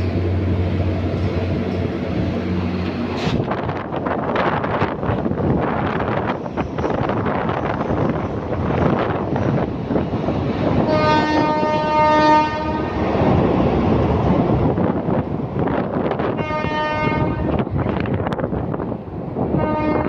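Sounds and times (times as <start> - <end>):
train wheels rumbling on rails: 0.0 - 20.0
train horn blast: 10.8 - 13.0, 16.2 - 17.6, 19.6 - 20.0.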